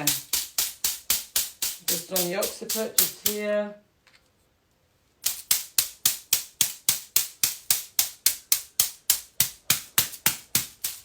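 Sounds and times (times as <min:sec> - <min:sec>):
bamboo tapper striking head: 0:00.0 - 0:03.4.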